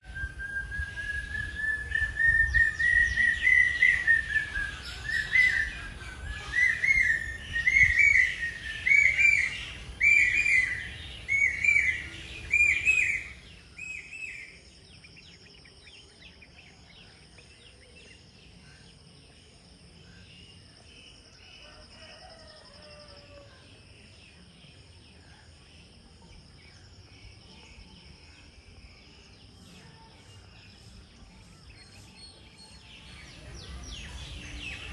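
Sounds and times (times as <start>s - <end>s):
bird whistled calls: 0.0s - 14.6s
distant faint bird calls: 0.0s - 34.9s.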